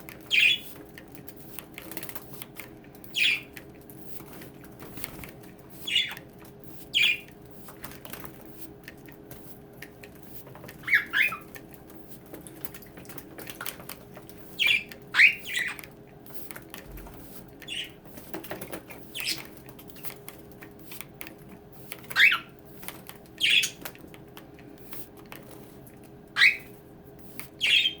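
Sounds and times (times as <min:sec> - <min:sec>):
wings fluttering: 0:00.0 - 0:27.8
budgerigars chirping and squawking: 0:00.2 - 0:00.8, 0:03.1 - 0:03.5, 0:05.8 - 0:06.2, 0:06.8 - 0:07.3, 0:10.8 - 0:11.6, 0:14.5 - 0:15.8, 0:17.6 - 0:18.0, 0:19.1 - 0:19.5, 0:22.0 - 0:22.6, 0:23.4 - 0:23.9, 0:26.4 - 0:26.7, 0:27.6 - 0:28.0.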